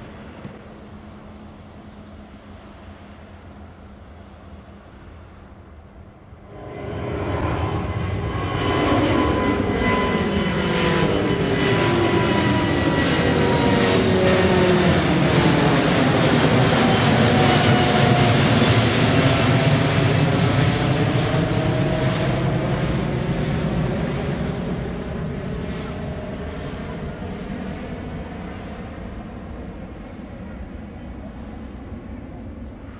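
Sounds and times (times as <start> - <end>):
jet engines roaring: 0.0 - 32.9.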